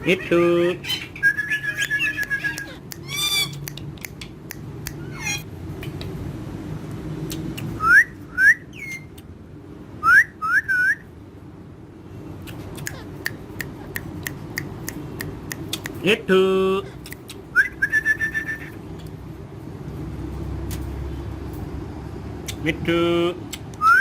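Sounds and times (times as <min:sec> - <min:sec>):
parrot whistling: 0:00.8 - 0:03.7, 0:07.8 - 0:09.1, 0:10.0 - 0:11.1, 0:17.5 - 0:18.8, 0:23.8 - 0:24.0.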